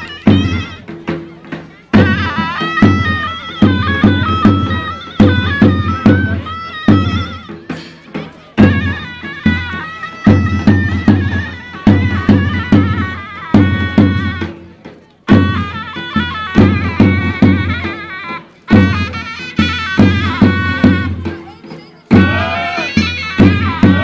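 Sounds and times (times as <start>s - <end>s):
loud regular drum strokes: 0.0s - 24.0s
shrill reed melody: 15.4s - 24.0s.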